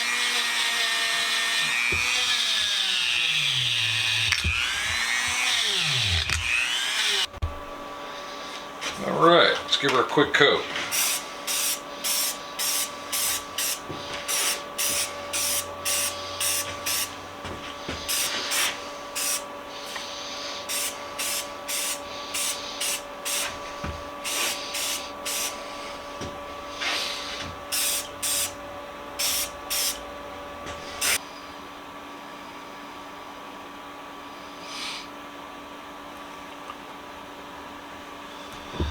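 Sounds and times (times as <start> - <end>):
spray paint hissing bursts: 10.9 - 17.1, 18.1 - 19.4, 20.6 - 23.6, 24.2 - 25.6, 27.7 - 28.6, 29.2 - 30.0, 30.9 - 31.2.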